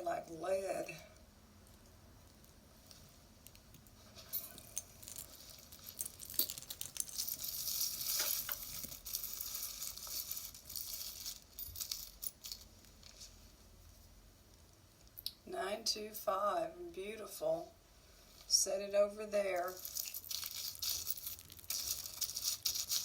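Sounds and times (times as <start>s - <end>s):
metal jewelry clinking: 1.6s - 13.4s, 19.6s - 23.0s
rustle: 2.3s - 15.1s.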